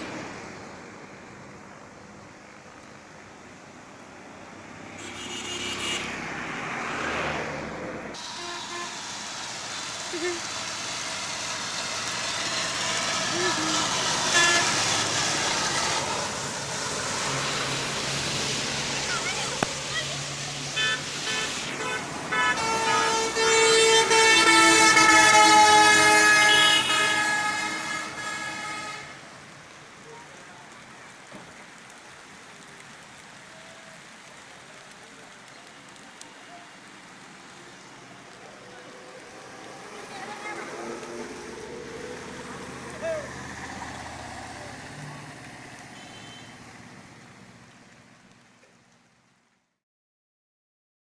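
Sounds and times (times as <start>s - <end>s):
steady traffic hiss: 0.0s - 49.4s
vehicle horns honking: 5.0s - 6.2s, 8.2s - 9.2s, 13.1s - 16.1s, 20.8s - 29.2s, 45.9s - 46.6s
vehicle passing close by: 5.7s - 29.2s, 37.8s - 47.6s.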